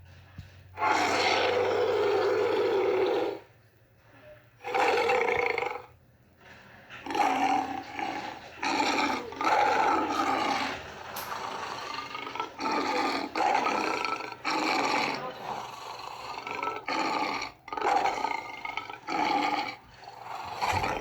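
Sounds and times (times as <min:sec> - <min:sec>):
monster growling roars: 0:00.8 - 0:03.4, 0:07.0 - 0:21.0.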